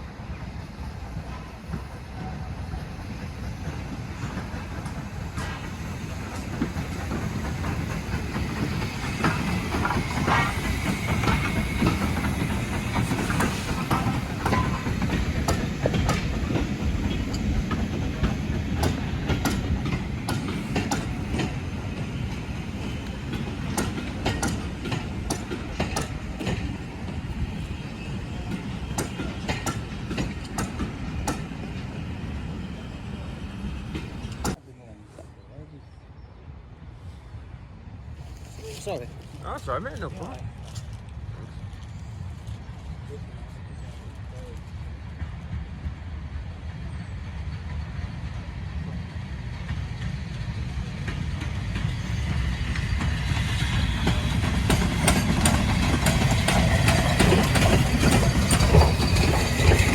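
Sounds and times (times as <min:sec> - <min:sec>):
train rumbling on rails: 0:00.0 - 0:59.9
wheels clicking over rail joints: 0:03.6 - 0:34.6, 0:50.9 - 0:59.9.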